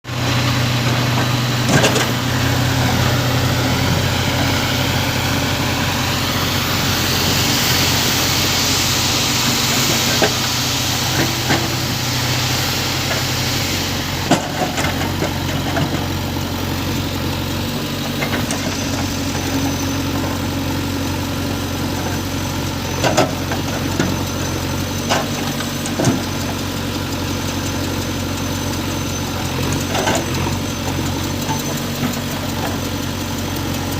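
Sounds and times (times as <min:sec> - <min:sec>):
diesel engine running: 0:00.0 - 0:33.9
hiss: 0:04.4 - 0:14.6.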